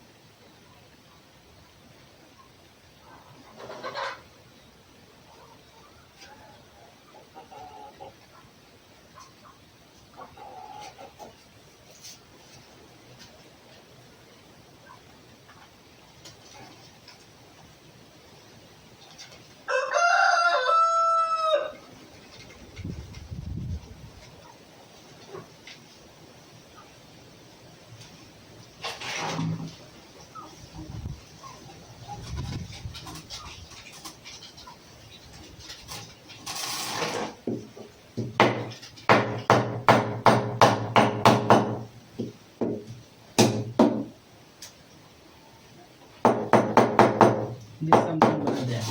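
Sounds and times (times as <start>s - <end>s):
rooster crowing: 19.7s - 21.9s
scraping hiss: 35.6s - 37.4s.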